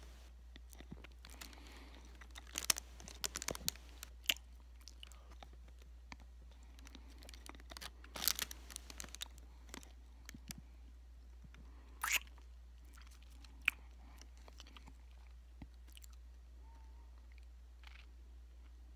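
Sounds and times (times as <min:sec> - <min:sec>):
low electrical hum: 0:00.0 - 0:18.9
mouth eating hard candy: 0:00.3 - 0:10.7, 0:11.8 - 0:16.2.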